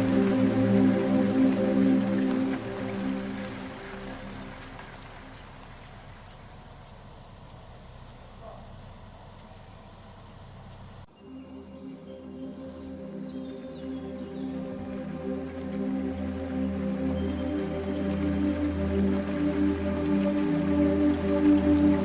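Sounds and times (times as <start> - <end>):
soft music: 0.0 - 5.8, 11.0 - 22.0
cricket chirping: 0.4 - 8.2.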